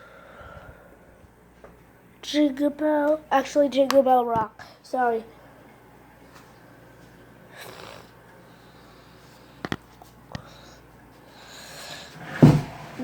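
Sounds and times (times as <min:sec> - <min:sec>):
breathing into microphone: 0:00.0 - 0:01.0.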